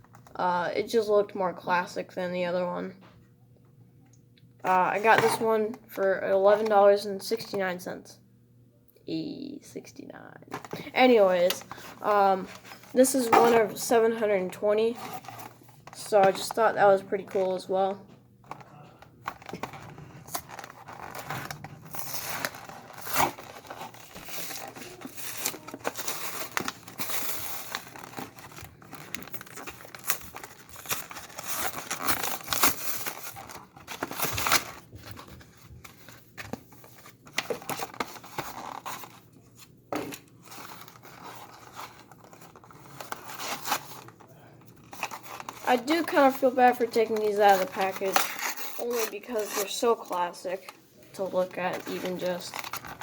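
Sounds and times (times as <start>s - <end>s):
packaging crinkling and tearing: 18.5s - 53.0s.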